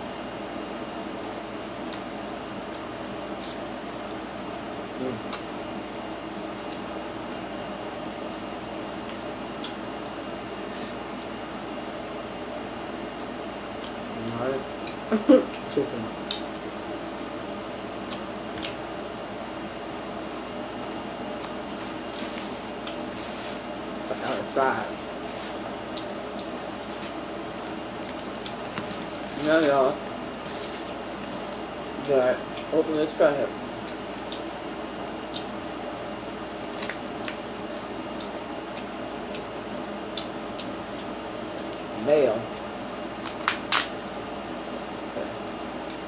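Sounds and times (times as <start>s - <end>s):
crab shell cracking: 43.2s - 44.0s.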